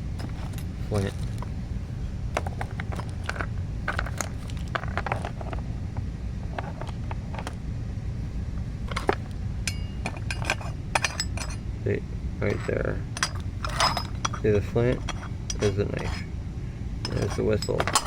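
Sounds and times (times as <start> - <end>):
steady low rumble: 0.0 - 18.0
plastic and metal pieces clattering: 2.4 - 5.6, 8.9 - 9.3, 10.0 - 11.6, 17.0 - 18.0.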